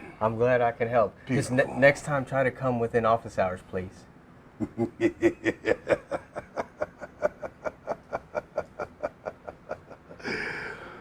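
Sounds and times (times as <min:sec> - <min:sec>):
person laughing: 0:04.6 - 0:11.0.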